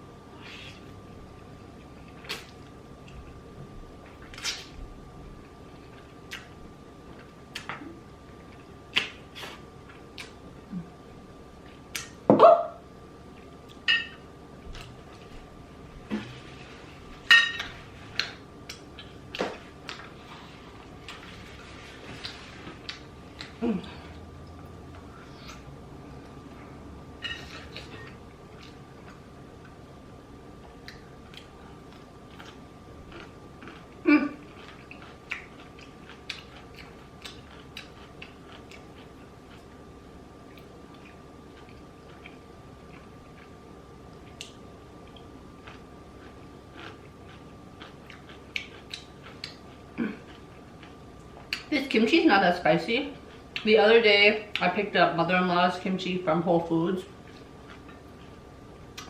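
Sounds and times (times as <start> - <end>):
faint high hum: 0.0 - 59.0
wet mouth clicks while chewing: 46.8 - 49.7.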